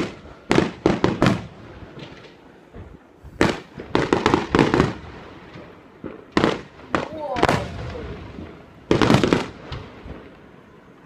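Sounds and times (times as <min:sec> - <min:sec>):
fireworks exploding: 0:00.0 - 0:11.0.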